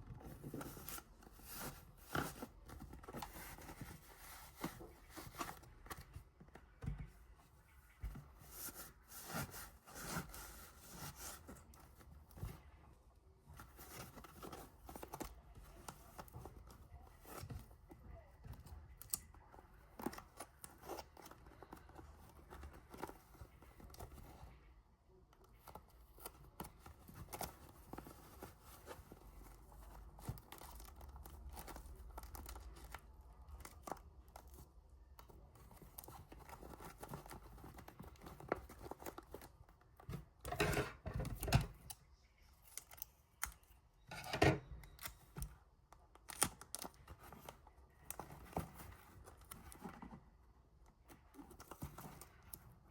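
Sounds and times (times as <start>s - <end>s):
paper rustling: 0.1s - 24.6s
paper crinkling: 25.4s - 52.9s.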